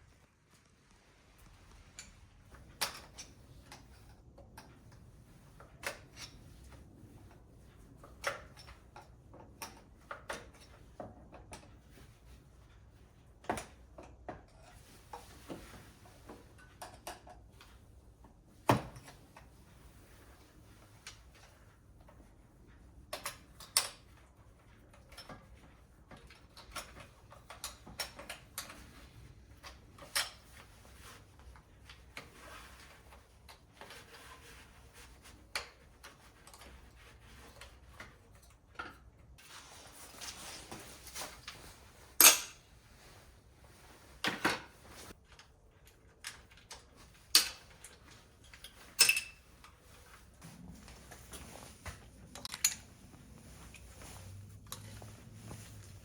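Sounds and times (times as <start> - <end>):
small metal tools clinking: 49.0 - 49.4, 52.4 - 52.9.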